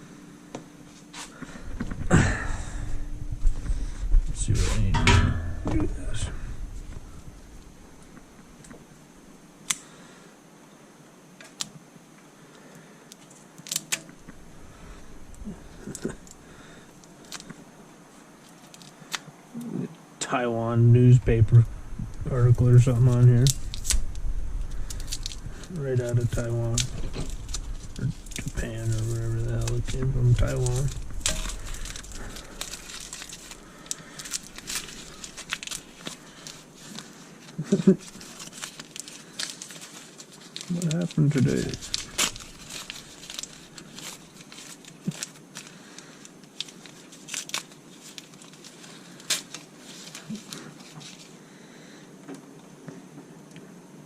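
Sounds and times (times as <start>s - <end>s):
paper crinkling and rustling: 13.2s - 19.3s, 22.3s - 51.4s.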